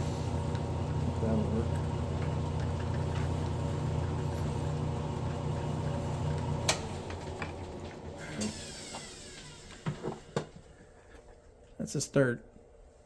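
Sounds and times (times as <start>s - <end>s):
metal lathe running: 0.0s - 9.6s.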